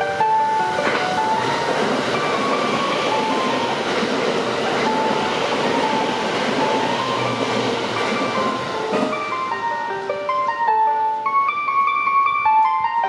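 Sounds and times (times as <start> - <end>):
train passing at speed: 0.0 - 12.8.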